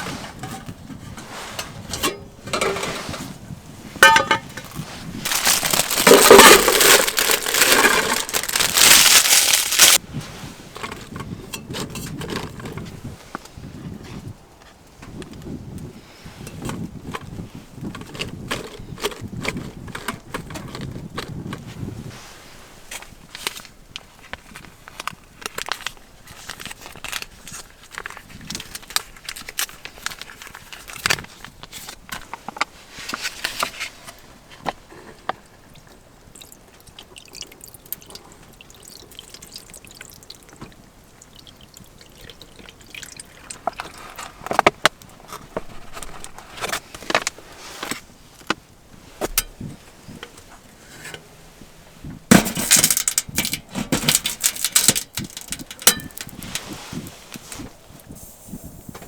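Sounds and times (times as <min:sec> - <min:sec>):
rustling: 0:00.0 - 0:10.9, 0:43.6 - 0:59.0
cookware clicking and knocking: 0:04.0 - 0:04.6.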